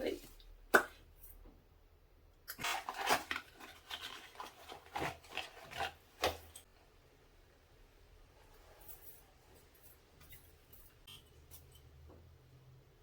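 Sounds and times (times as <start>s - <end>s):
packaging rustling and scraping: 2.6s - 6.7s.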